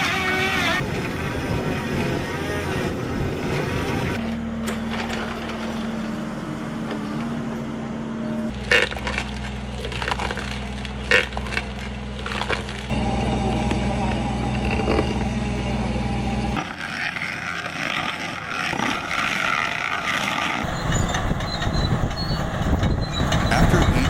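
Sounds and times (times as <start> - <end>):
heavy machine engine running: 0.0 - 20.0, 20.6 - 24.0
wood cracking: 8.5 - 13.0, 16.6 - 20.7.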